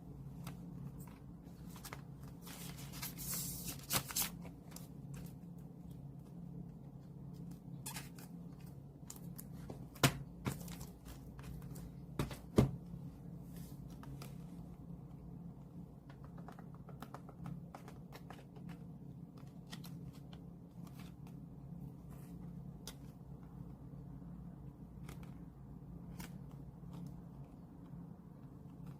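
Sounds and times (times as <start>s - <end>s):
steady low hum: 0.0s - 28.9s
cards and packaging rustling: 0.3s - 6.4s, 7.2s - 12.5s.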